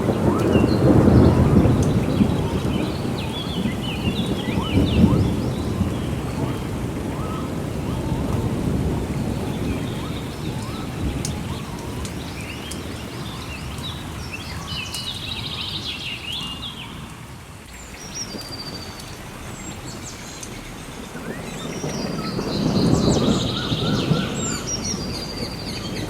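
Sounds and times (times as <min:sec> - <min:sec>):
birds chirping in trills: 0:00.0 - 0:26.0
crackling wood fire: 0:00.0 - 0:26.0
steady rain: 0:00.0 - 0:26.0
thunder rumbling: 0:00.0 - 0:26.0.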